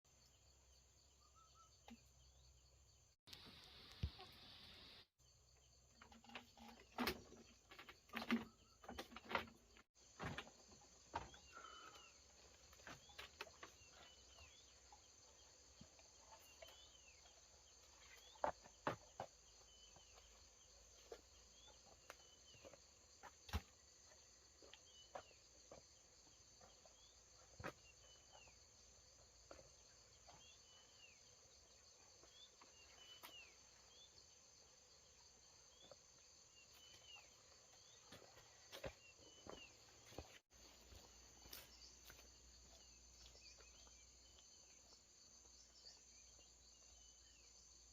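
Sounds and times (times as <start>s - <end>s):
bird chirps: 0.3s - 2.6s.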